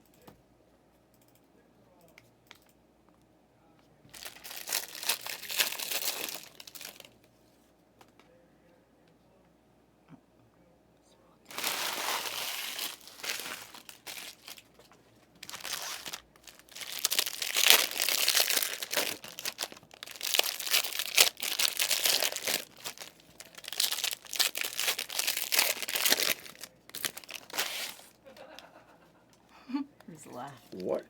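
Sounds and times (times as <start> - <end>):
plastic wrapping crinkling and tearing: 4.1 - 7.2, 11.5 - 28.1.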